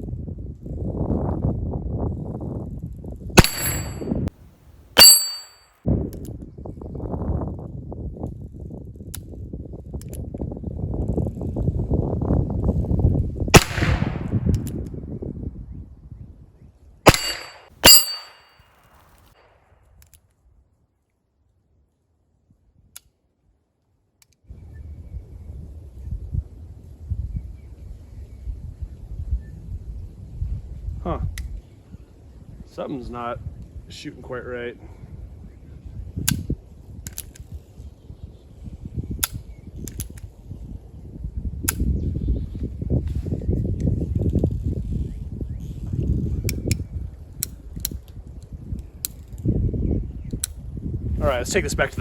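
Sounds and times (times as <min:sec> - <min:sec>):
metallic clicks: 0:03.4 - 0:04.0, 0:05.0 - 0:05.6, 0:17.1 - 0:18.5
revolver shots with metallic ring: 0:03.4 - 0:04.3, 0:05.0 - 0:05.6, 0:13.6 - 0:14.4, 0:17.1 - 0:18.6.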